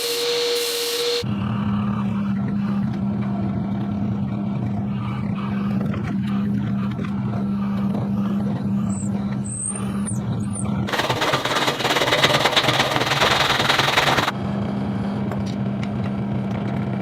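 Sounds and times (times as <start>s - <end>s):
power tool motor humming: 0.0s - 1.3s, 7.2s - 14.3s
harsh grinding on metal: 5.7s - 14.3s.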